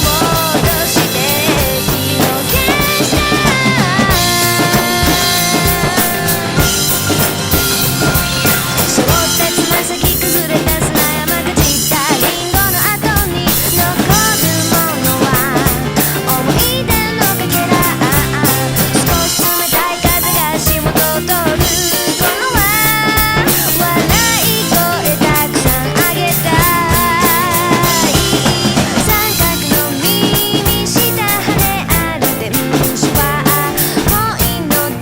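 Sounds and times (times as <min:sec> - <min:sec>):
pop song vocal: 0:00.0 - 0:07.4, 0:08.0 - 0:35.0
drums playing a steady beat: 0:00.0 - 0:35.0.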